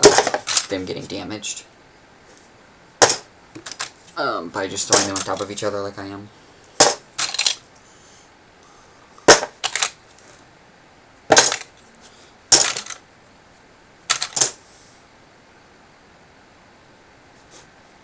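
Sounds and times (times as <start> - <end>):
memory modules clattering: 0.0 - 1.1, 3.0 - 6.0, 6.8 - 7.6, 9.2 - 10.0, 11.3 - 11.8, 12.5 - 13.0, 14.1 - 14.6.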